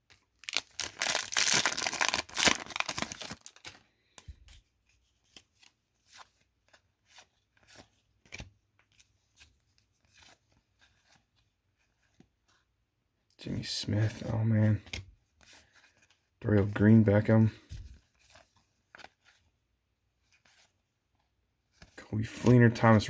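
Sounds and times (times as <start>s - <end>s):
card pack wrapper ripping: 0.4s - 3.8s.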